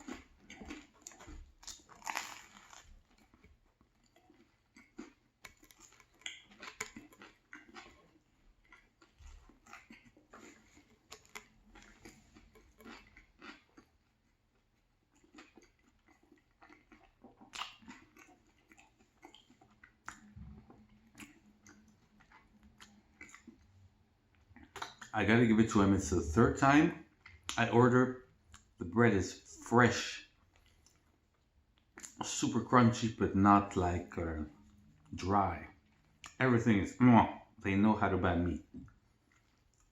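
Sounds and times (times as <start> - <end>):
crunching of crusty bread: 0.0 - 27.6
soft chewing: 0.0 - 37.6, 38.6 - 39.9.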